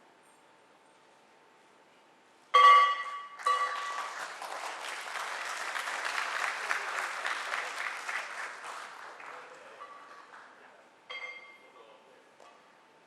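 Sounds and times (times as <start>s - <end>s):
ringing bell tone: 2.6s - 4.0s, 11.1s - 11.7s
audience applauding: 3.4s - 10.8s.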